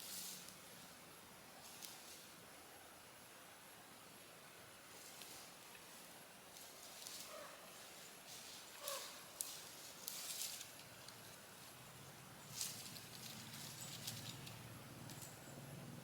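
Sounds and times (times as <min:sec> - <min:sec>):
footsteps crunching through dry leaves: 0:05.0 - 0:10.8, 0:12.4 - 0:14.3.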